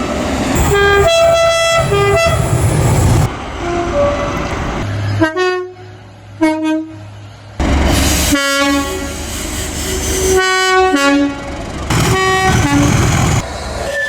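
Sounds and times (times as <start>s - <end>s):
loud train rumble: 0.0s - 14.0s
train air horn blasts: 0.6s - 4.4s, 7.9s - 13.1s.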